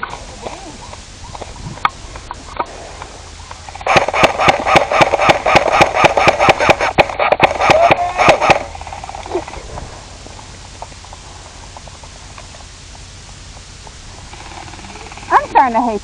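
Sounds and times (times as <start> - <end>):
airsoft gun rapid firing: 3.7 - 9.2.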